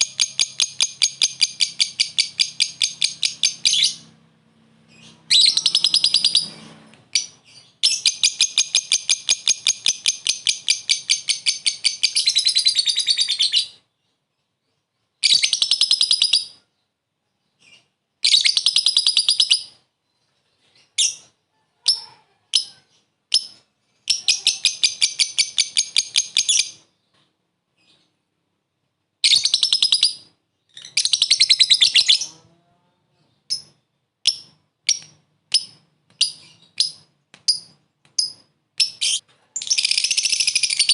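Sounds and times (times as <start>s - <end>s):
bird sharp chirps: 0.0s - 4.2s, 4.9s - 13.9s, 33.4s - 40.9s
lovebird shrill trills: 5.0s - 13.8s.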